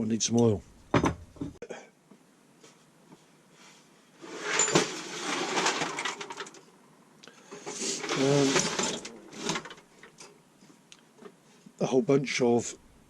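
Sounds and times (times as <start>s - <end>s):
metal tools rattling and clattering: 4.4s - 6.6s, 8.0s - 9.8s.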